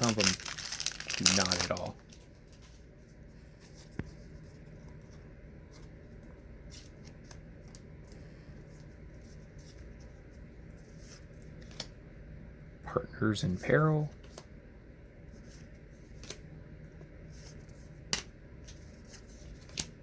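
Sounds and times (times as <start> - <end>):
trading cards clicking and rustling: 0.0 - 2.7
low steady hum: 0.0 - 20.0.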